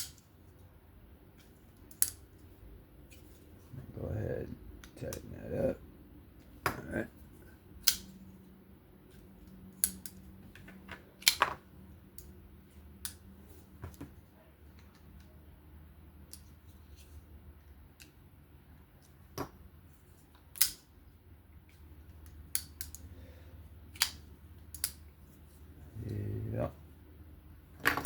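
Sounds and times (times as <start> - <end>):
small knife parts clicking: 1.9 - 2.2, 7.8 - 8.2, 22.2 - 23.0, 23.9 - 25.0.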